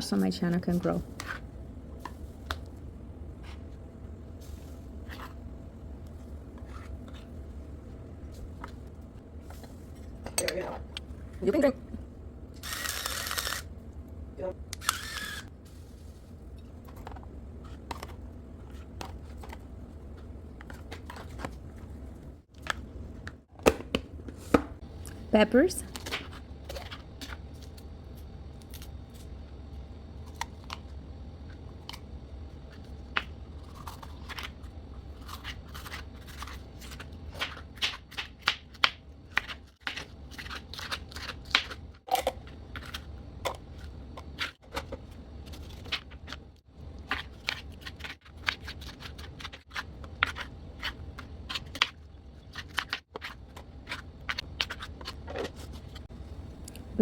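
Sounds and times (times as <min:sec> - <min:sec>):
low steady hum: 0:00.0 - 0:57.0.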